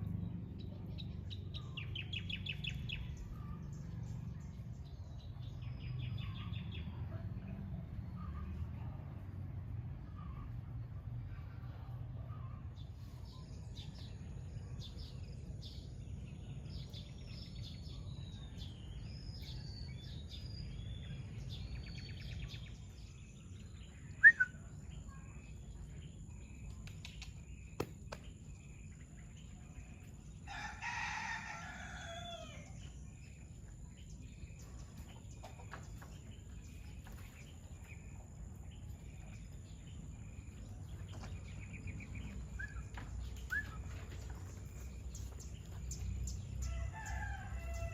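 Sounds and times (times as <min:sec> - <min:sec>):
small birds chirping: 0:00.0 - 0:47.9
rooster crowing: 0:30.5 - 0:32.8, 0:46.6 - 0:47.9.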